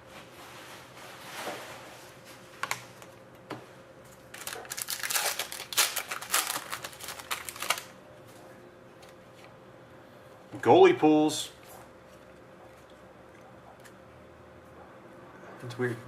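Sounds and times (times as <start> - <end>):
card packaging crackling and clicking: 4.2 - 8.0.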